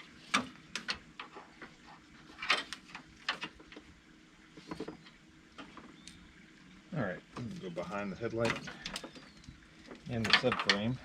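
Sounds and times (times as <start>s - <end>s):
faint steady hum: 0.0s - 11.0s
wiring harness clicks and rustles: 0.2s - 3.9s, 7.4s - 11.0s.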